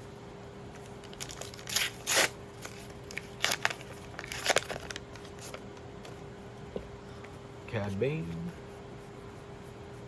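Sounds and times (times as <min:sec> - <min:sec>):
cards rustling: 0:01.0 - 0:05.6
wrapper crinkling: 0:01.1 - 0:05.6.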